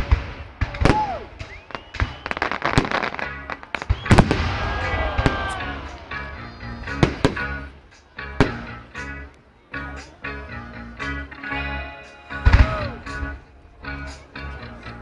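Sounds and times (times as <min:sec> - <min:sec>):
fireworks bangs and crackles: 0:00.0 - 0:06.1, 0:06.8 - 0:07.7, 0:08.4 - 0:08.7
firework whistles: 0:00.8 - 0:05.4.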